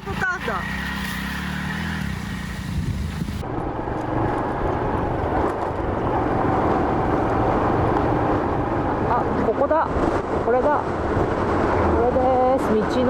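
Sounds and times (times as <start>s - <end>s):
motorcycle engine running: 0.0s - 9.3s
wind rush on microphone: 2.3s - 13.0s.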